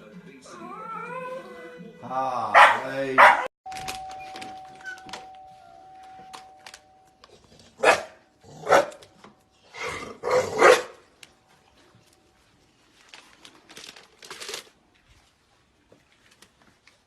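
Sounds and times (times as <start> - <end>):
dog barking: 2.5 - 3.5, 7.8 - 9.0, 10.3 - 11.0.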